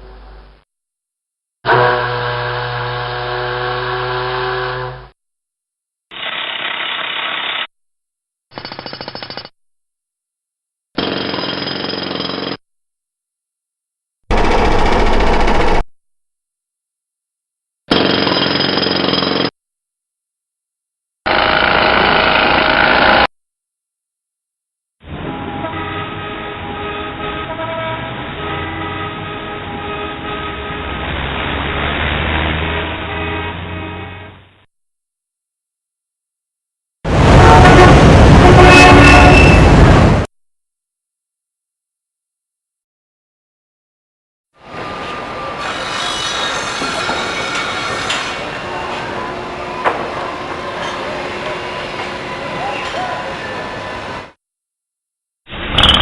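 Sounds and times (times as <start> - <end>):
held car horn tones: 1.7 - 5.1
power tool burst: 6.1 - 7.7
jackhammer-like hammering: 8.5 - 9.6, 11.0 - 12.6, 14.3 - 15.9, 17.9 - 19.6, 21.2 - 23.3
loud mechanical clip: 14.3 - 15.8
steady machine drone: 14.3 - 15.8
rattling burst: 14.3 - 15.9
busy road traffic rumble: 25.2 - 34.6.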